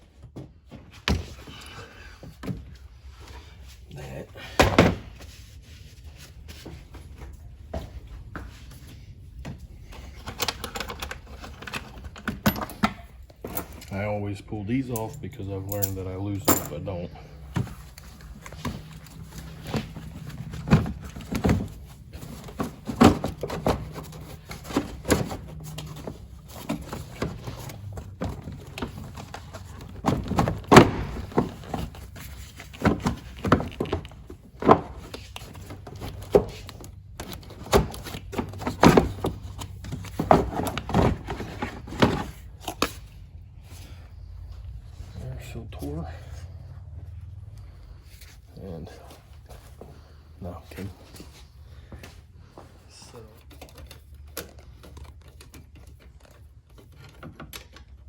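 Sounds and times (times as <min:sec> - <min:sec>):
tools and metal parts clanking: 0:09.8 - 0:43.9, 0:53.1 - 0:58.0.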